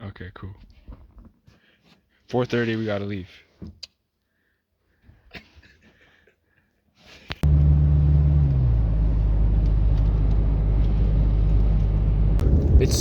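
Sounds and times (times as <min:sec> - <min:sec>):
car engine starting and idling: 0:07.4 - 0:13.0.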